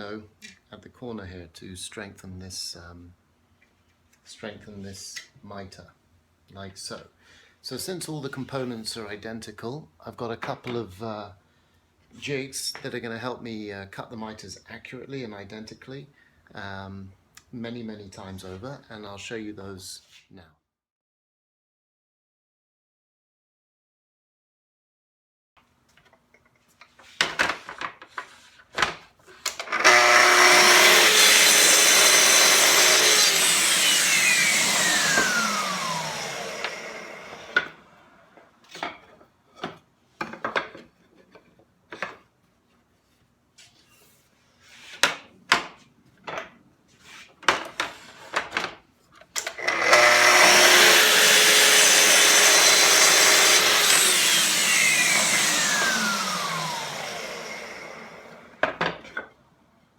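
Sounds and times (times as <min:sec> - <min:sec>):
circular saw cutting wood: 0:29.6 - 0:38.2, 0:49.4 - 0:58.7.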